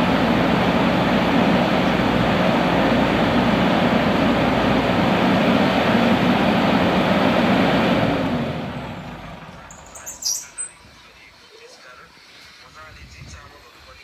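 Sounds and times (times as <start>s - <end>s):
diesel tractor engine running: 0.0s - 10.7s.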